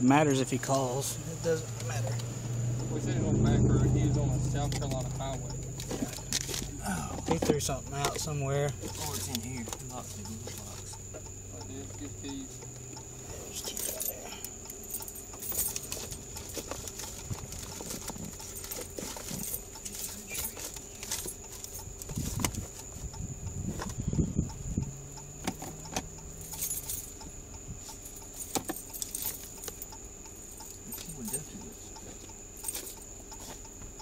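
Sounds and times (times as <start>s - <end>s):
thumps and rustling: 4.7s - 9.3s, 15.4s - 24.4s, 27.9s - 29.8s
keys jangling and clicking: 13.6s - 22.4s, 25.6s - 27.2s, 27.9s - 31.8s, 32.5s - 33.5s.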